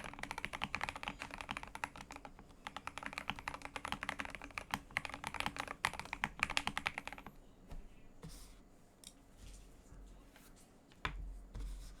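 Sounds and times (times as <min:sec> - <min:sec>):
mechanical keyboard typing: 0:00.0 - 0:07.3.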